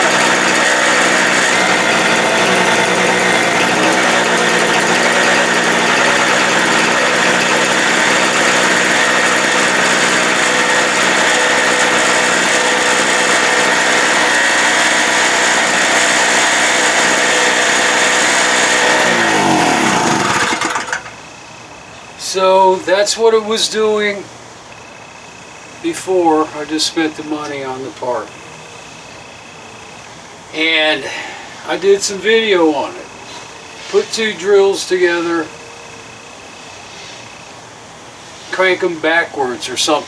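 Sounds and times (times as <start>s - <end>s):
engine winding down: 0.0s - 21.2s
generator engine running: 0.0s - 21.2s.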